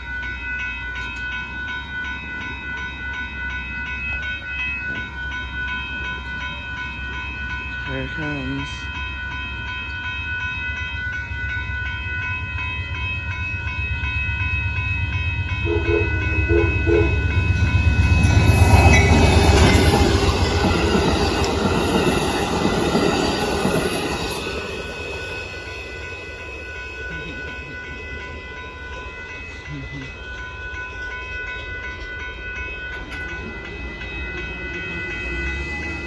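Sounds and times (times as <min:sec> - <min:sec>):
crossing bells ringing: 0:00.0 - 0:36.0
train cars clattering: 0:00.0 - 0:36.0
diesel locomotive rumble: 0:04.9 - 0:30.2
train horn toots: 0:15.6 - 0:17.4.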